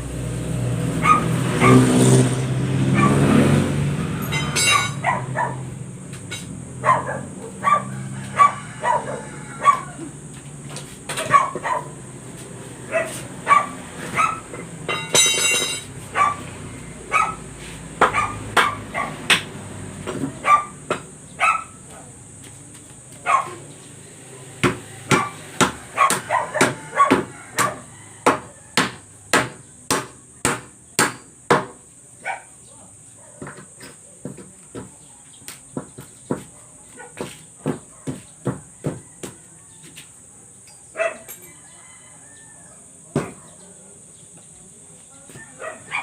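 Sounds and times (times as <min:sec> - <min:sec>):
hammer blows: 0:01.0 - 0:06.8, 0:13.2 - 0:16.1, 0:24.6 - 0:31.8.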